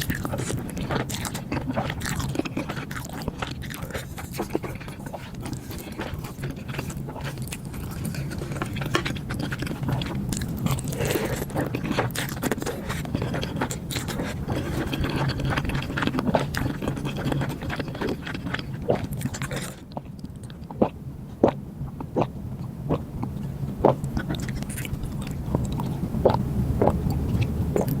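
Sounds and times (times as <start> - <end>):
chewing and mouth sounds: 0.0 - 28.0.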